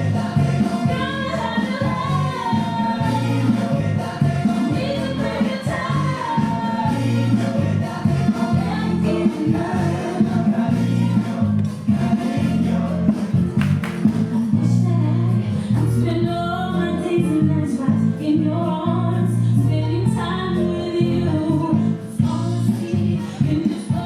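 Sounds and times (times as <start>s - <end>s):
choir-like singing: 0.0s - 13.5s.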